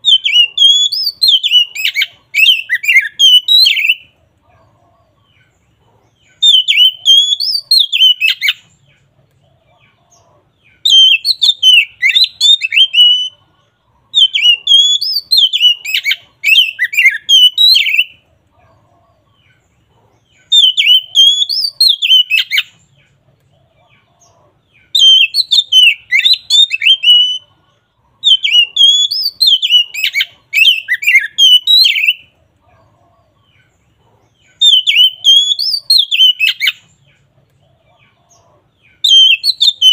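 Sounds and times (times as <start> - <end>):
bird singing whistled notes: 0.0 - 4.1, 6.2 - 8.8, 10.6 - 13.4, 14.1 - 18.2, 20.3 - 22.9, 24.7 - 27.5, 28.2 - 32.3, 34.4 - 37.2, 38.8 - 39.9.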